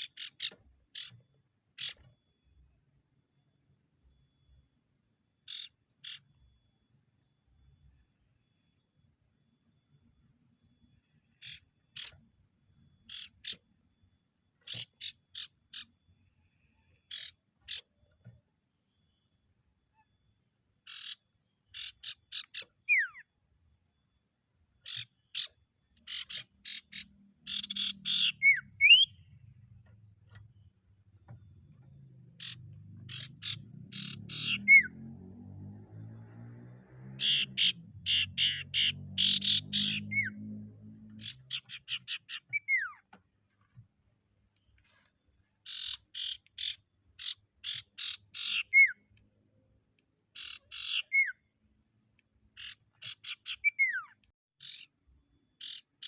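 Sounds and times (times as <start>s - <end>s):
bird chattering and whistling: 20.9s - 23.2s, 24.8s - 29.3s, 32.4s - 35.0s, 37.2s - 40.4s, 41.2s - 43.0s, 45.7s - 49.0s, 50.4s - 51.4s, 52.6s - 54.9s.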